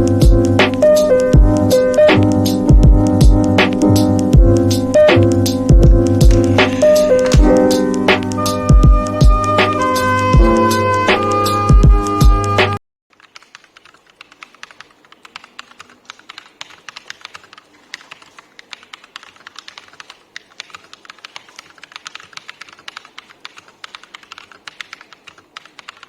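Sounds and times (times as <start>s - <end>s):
fast mechanical keyboard typing: 6.1s - 7.9s, 13.1s - 26.0s.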